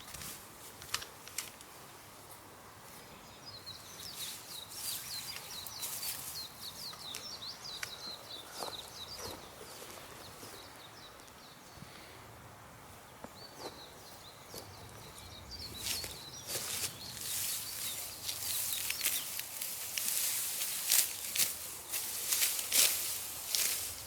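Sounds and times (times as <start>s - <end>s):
small birds chirping: 2.9s - 12.2s, 13.0s - 24.0s
grass being cut by hand: 16.5s - 24.0s.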